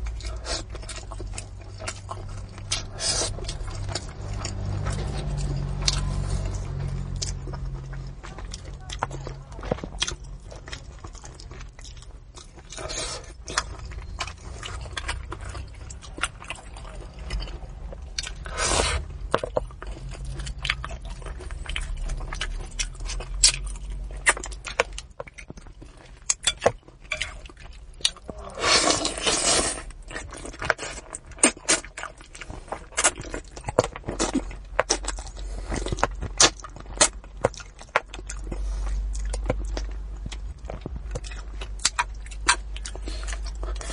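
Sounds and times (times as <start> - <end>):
slurping: 0.0 - 8.2, 12.6 - 19.2, 28.2 - 33.1
wet chewing and smacking: 0.0 - 43.9.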